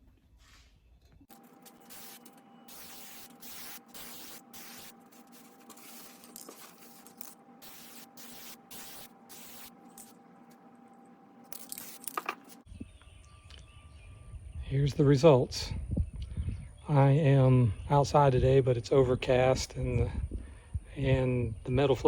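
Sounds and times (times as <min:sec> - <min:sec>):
spray can hissing: 0:01.3 - 0:10.2, 0:11.5 - 0:12.6
steady hum: 0:01.3 - 0:16.7.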